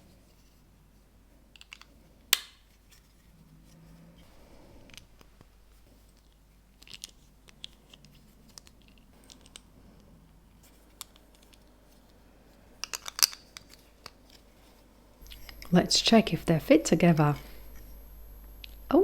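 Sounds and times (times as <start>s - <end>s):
plastic bricks clicking: 1.6s - 2.6s, 12.8s - 14.2s.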